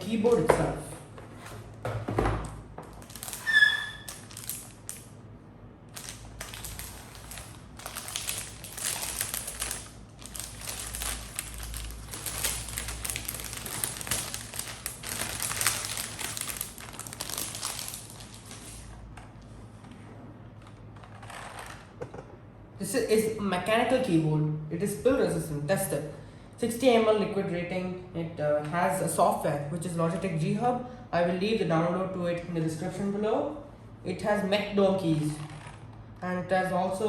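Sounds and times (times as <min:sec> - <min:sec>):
plastic wrapping crinkling: 0:02.8 - 0:05.2, 0:05.9 - 0:19.1
short squeak: 0:03.4 - 0:04.1.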